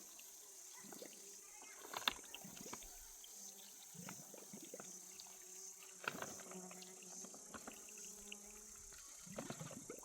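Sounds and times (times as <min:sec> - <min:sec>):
high-pitched background hiss: 0:00.0 - 0:09.8
insect buzzing: 0:00.0 - 0:10.0.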